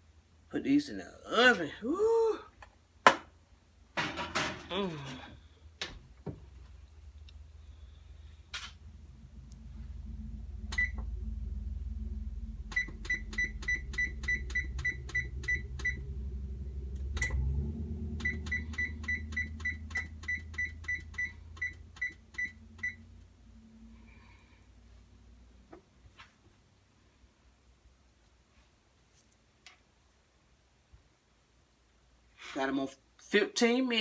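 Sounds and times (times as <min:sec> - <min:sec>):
low hum: 0:04.7 - 0:25.6.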